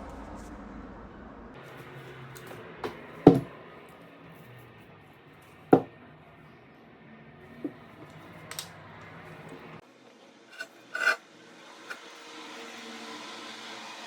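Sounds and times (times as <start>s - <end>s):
sharp knocks and clunks: 2.8s - 3.5s.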